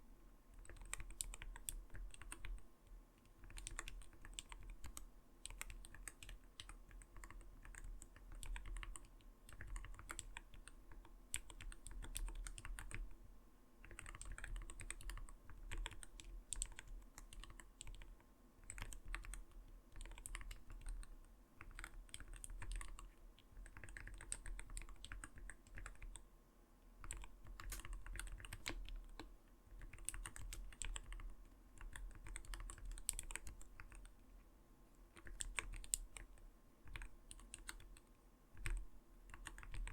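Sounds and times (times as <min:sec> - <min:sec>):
mechanical keyboard typing: 0:00.6 - 0:02.6, 0:03.3 - 0:13.1, 0:13.8 - 0:26.2, 0:27.0 - 0:34.1, 0:35.2 - 0:38.0, 0:38.6 - 0:39.9.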